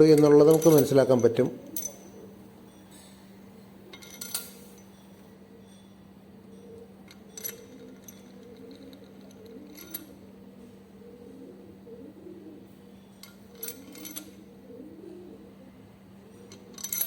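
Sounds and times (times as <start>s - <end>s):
light metallic clinks: 0.1s - 10.2s.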